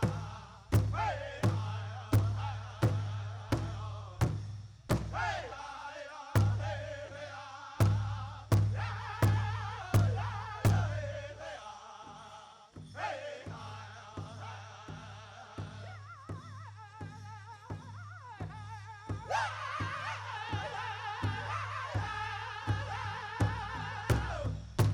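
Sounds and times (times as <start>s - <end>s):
group singing in high unison: 0.0s - 4.4s, 5.0s - 17.1s, 19.2s - 24.9s
large drum strikes: 0.0s - 5.4s, 6.4s - 6.8s, 7.8s - 11.1s, 24.1s - 24.9s.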